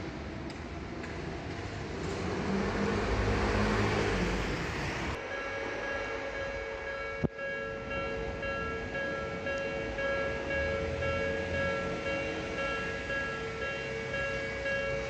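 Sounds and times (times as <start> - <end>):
train running past: 0.0 - 15.0
steady hum of held tones: 5.2 - 15.0.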